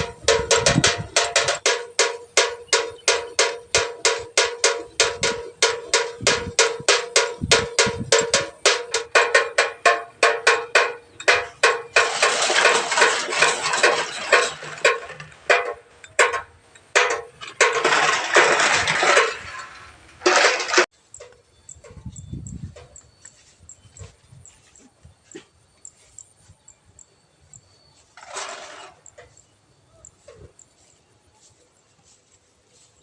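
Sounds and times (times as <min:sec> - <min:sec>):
windmill bird scarer knocking: 0:00.0 - 0:22.1.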